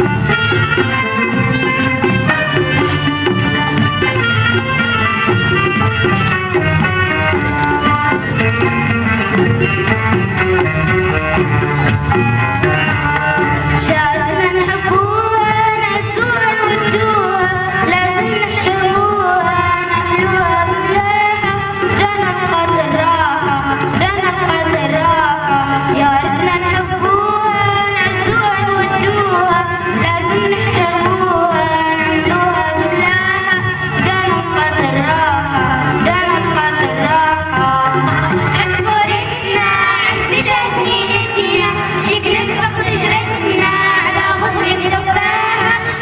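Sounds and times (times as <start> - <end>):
instrumental accompaniment: 0.0 - 46.0.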